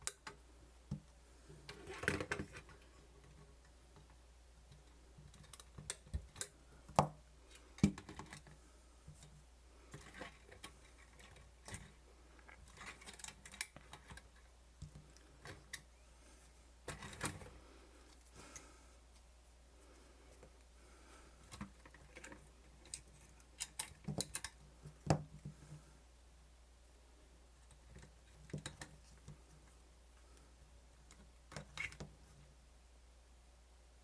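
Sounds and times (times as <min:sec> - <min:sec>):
hands handling parts on workbench: 0:09.9 - 0:20.7.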